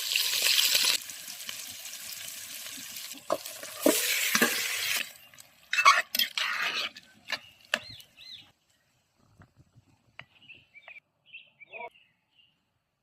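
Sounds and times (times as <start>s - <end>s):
faint bird chirps: 10.2s - 12.6s.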